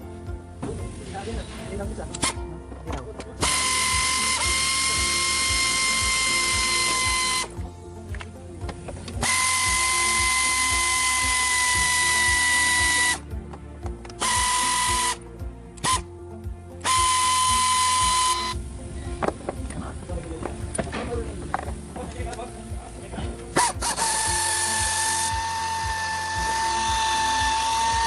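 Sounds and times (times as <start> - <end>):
background music with steady beat: 0.0 - 28.0
power drill whining: 3.4 - 7.6, 9.2 - 13.3, 14.2 - 15.2, 16.8 - 18.6, 23.6 - 28.0.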